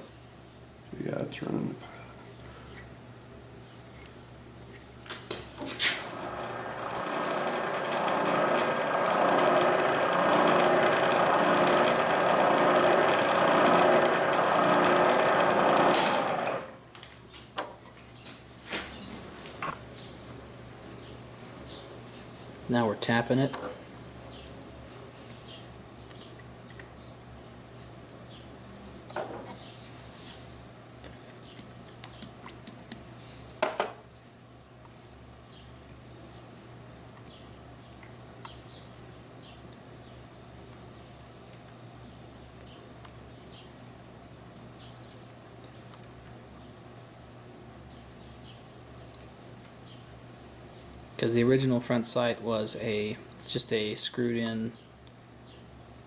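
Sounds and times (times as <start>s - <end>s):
milling machine drilling metal: 6.2s - 16.7s.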